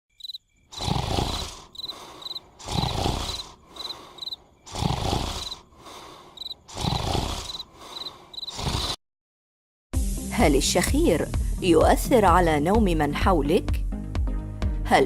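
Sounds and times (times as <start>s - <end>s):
crickets chirping: 0.1s - 9.0s
person snoring: 0.7s - 9.0s
soft breaths: 0.8s - 9.0s.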